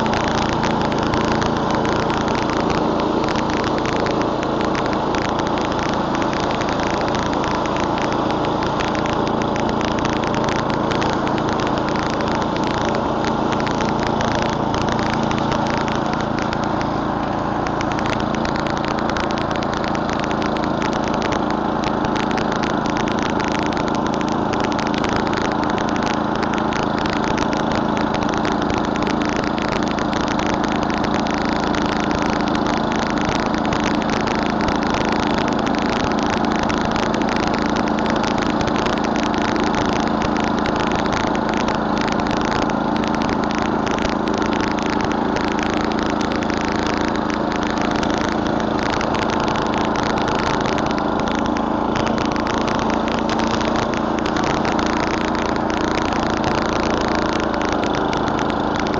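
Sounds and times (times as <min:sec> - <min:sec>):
snowblower engine running: 0:00.0 - 0:58.9.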